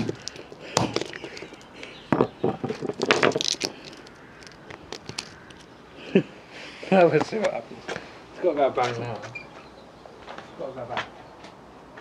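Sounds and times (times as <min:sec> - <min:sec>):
plastic casing knocks and clatters: 0:00.0 - 0:05.6.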